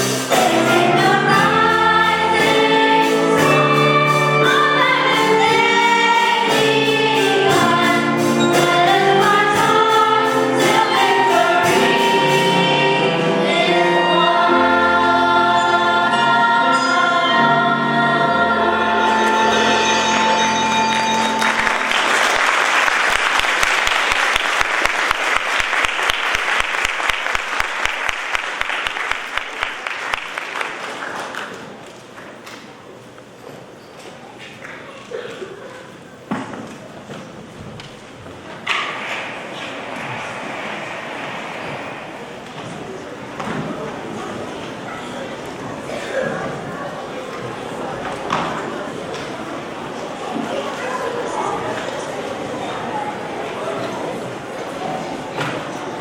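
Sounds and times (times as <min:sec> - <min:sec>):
choir singing in harmony: 0:00.0 - 0:22.1, 0:38.6 - 0:47.9
audience applause: 0:20.7 - 0:32.3.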